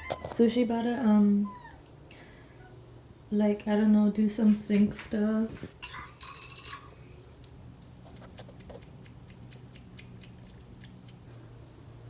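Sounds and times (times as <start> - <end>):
steady low hum: 1.9 - 12.0
cat ticking and tapping in sink: 7.8 - 11.3.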